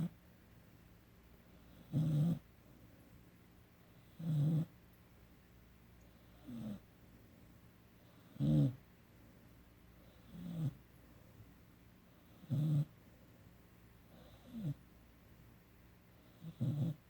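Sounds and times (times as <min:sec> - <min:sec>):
puppy snoring: 0:01.6 - 0:02.5, 0:03.9 - 0:04.8, 0:06.1 - 0:06.9, 0:08.0 - 0:08.8, 0:10.0 - 0:10.8, 0:12.1 - 0:13.0, 0:14.0 - 0:14.9, 0:16.2 - 0:17.0.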